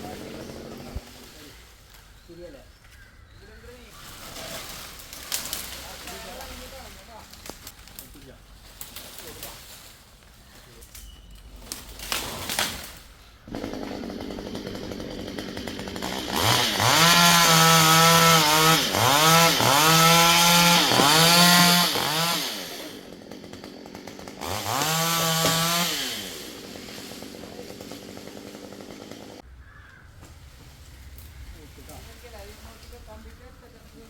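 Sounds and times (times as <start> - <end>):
chainsaw idling and revving: 0.0 - 1.5, 4.3 - 8.1, 11.6 - 29.5.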